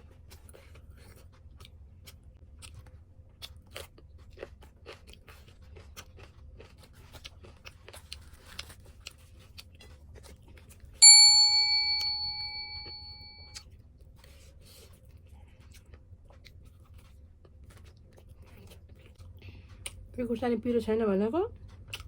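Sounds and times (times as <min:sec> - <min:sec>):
bright metallic ding: 0:11.0 - 0:13.4
chewing clicks: 0:21.5 - 0:22.0.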